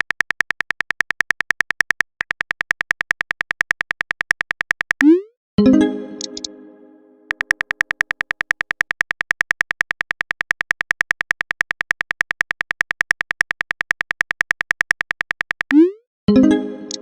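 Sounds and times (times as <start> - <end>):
phone keyboard tap clicks: 6.2 - 6.5, 7.3 - 15.8.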